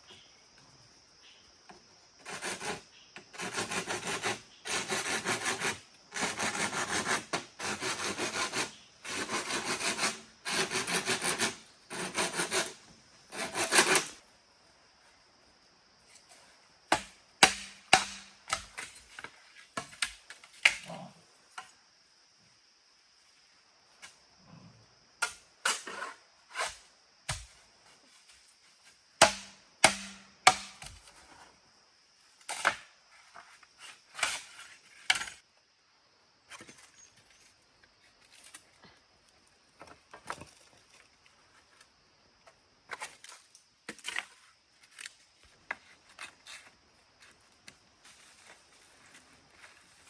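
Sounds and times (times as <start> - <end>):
tool chopping wood: 16.9 - 18.8, 29.2 - 31.0.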